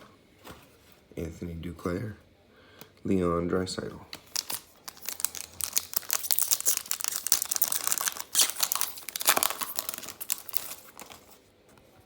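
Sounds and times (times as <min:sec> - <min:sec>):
foil wrapper crinkling: 0:04.2 - 0:11.4
foil wrapper ripping: 0:04.2 - 0:11.4.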